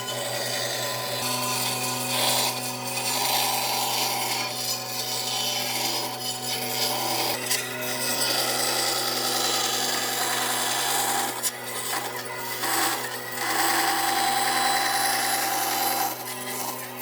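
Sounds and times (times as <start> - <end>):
power tool motor hum: 0.0 - 17.0
rasping on wood: 8.0 - 17.0.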